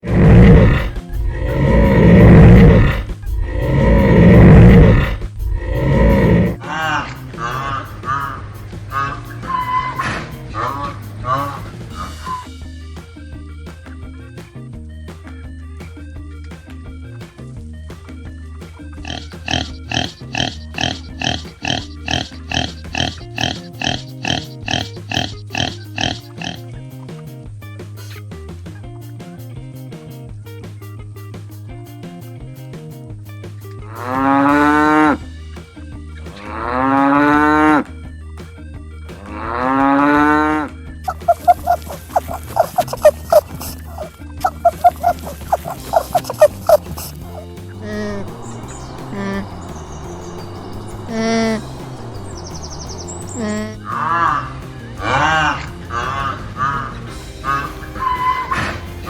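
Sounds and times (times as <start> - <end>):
big cat roaring: 0.0 - 12.4, 19.0 - 26.6, 33.9 - 35.2, 53.3 - 59.0
pig oinking: 0.0 - 12.5, 19.0 - 26.8, 33.9 - 35.2, 36.3 - 37.9, 39.2 - 49.6, 51.1 - 59.0
background music: 0.0 - 59.0.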